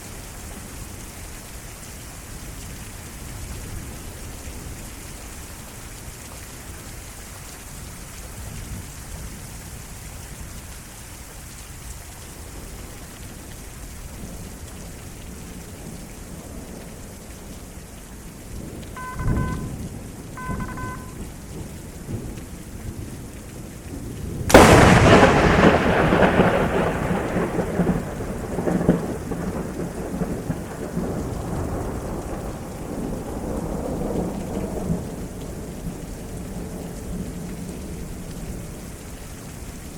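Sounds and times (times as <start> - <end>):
heavy rain: 0.0 - 39.9
thunder rumbling: 18.4 - 23.2, 24.0 - 37.2
short electronic beeps: 19.0 - 19.8, 20.4 - 21.2
low thump of thunder: 19.0 - 21.2, 24.5 - 32.6
lightning crack: 24.4 - 32.6.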